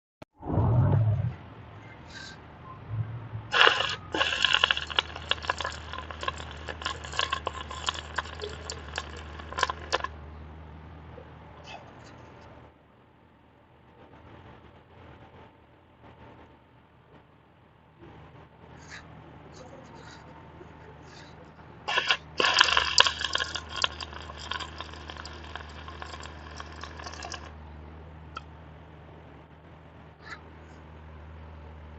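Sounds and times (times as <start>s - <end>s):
low steady hum: 0.4s - 15.4s
welding arc crackling: 3.5s - 10.2s, 21.9s - 27.6s.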